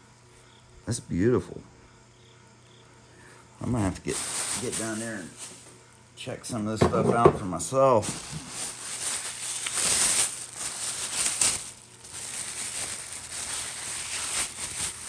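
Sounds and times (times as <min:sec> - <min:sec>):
plastic bags crinkling: 0:04.0 - 0:05.8, 0:07.9 - 0:15.0.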